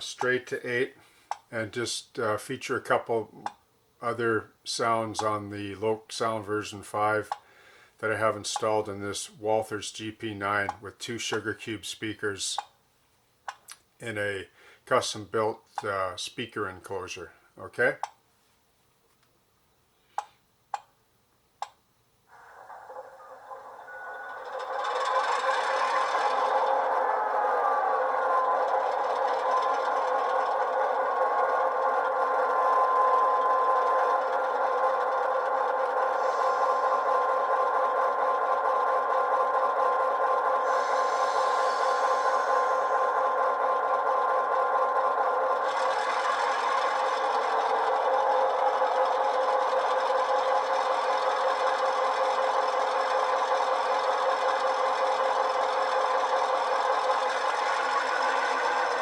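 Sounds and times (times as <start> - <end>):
steady whine: 0.0 - 7.4, 22.0 - 59.0
thin diesel engine drone: 22.3 - 59.0.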